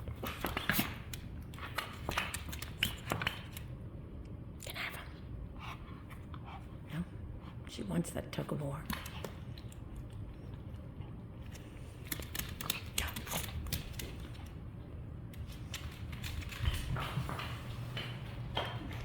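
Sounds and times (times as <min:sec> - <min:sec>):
dog claws clicking and tapping: 0:00.0 - 0:03.8, 0:08.8 - 0:10.3, 0:11.4 - 0:19.0
low steady hum: 0:00.0 - 0:19.0.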